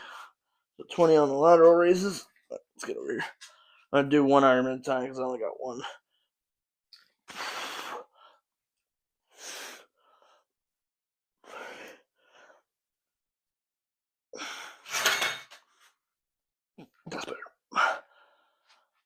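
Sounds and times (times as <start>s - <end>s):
man breathing forcefully: 7.3s - 8.4s.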